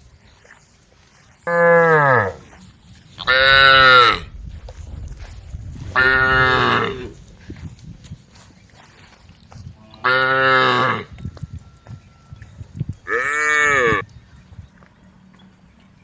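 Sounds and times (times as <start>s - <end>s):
cows mooing: 1.5s - 2.4s, 6.0s - 7.2s, 9.8s - 11.2s, 13.0s - 14.0s.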